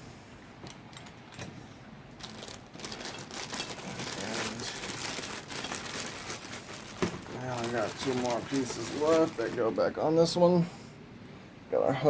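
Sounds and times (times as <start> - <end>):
crinkling rustle: 2.2 - 10.0.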